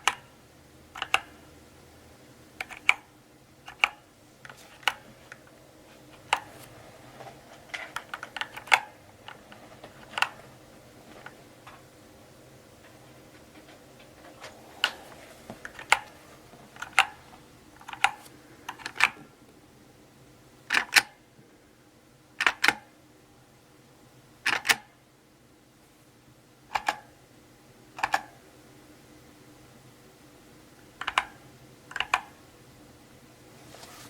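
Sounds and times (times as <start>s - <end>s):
mechanical keyboard clicks: 1.0s - 1.3s, 2.6s - 4.0s, 7.8s - 9.4s, 10.0s - 10.4s, 15.7s - 16.1s, 16.8s - 17.2s, 17.8s - 19.2s, 20.7s - 21.2s, 22.4s - 22.8s, 24.4s - 24.9s, 26.7s - 27.1s, 28.0s - 28.3s, 31.0s - 32.4s.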